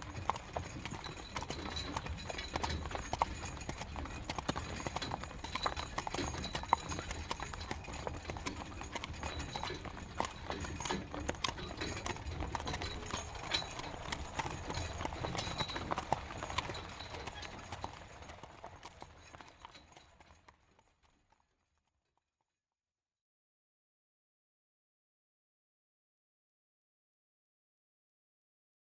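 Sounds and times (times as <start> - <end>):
horse hooves clip-clopping: 0.0 - 21.5
carriage rumbling: 9.0 - 18.4.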